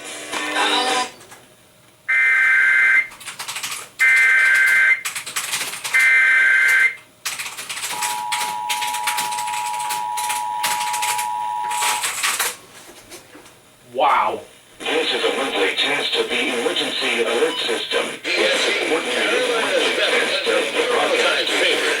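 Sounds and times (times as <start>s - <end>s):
two-tone attention signal: 7.9s - 12.1s
crackling static: 14.8s - 22.0s.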